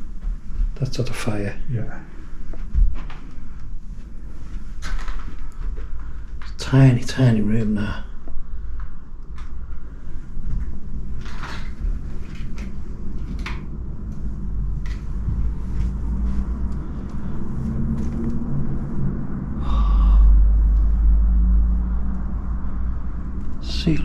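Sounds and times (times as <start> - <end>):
steady low rumble: 0.0 - 24.0.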